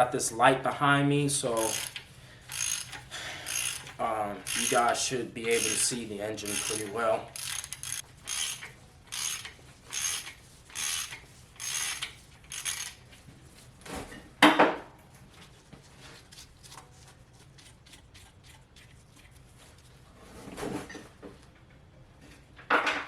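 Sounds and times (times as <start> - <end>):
ratchet wrench rasping: 1.6 - 13.0.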